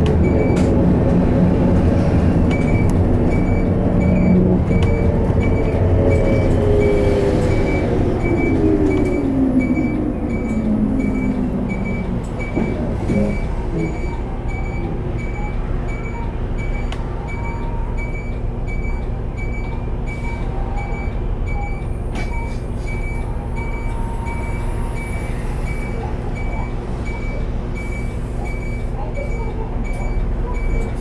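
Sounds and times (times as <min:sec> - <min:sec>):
bus whine falling in pitch: 0:00.0 - 0:14.5
bus road and drivetrain rumble: 0:00.0 - 0:31.0.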